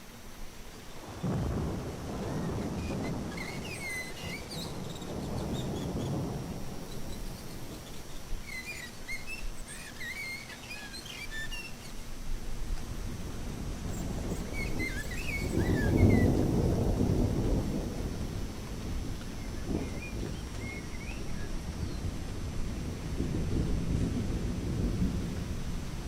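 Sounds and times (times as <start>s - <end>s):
birds chirping: 2.2s - 12.0s, 13.9s - 17.0s, 19.4s - 22.2s.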